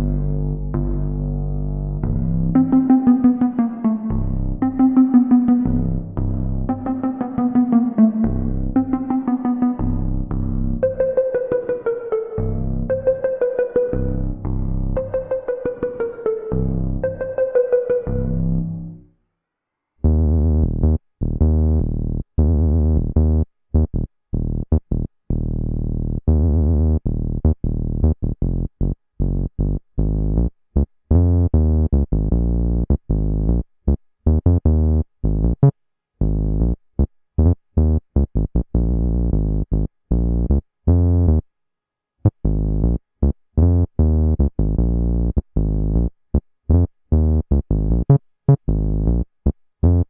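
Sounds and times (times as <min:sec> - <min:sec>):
synthesizer bass riff: 0:00.0 - 0:19.0, 0:20.0 - 0:23.9.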